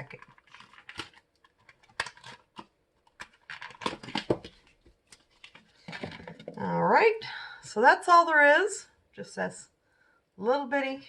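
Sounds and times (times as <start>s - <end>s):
wrapper crinkling and crackling: 0.0s - 6.5s.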